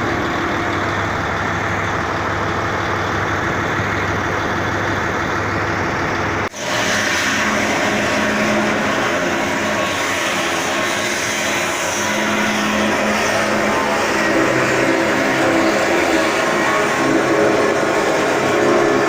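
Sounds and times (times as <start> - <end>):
diesel truck engine idling: 0.0 - 19.0.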